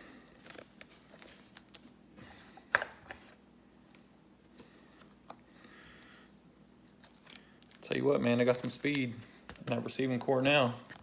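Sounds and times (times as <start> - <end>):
trading cards being shuffled: 8.5 - 11.0.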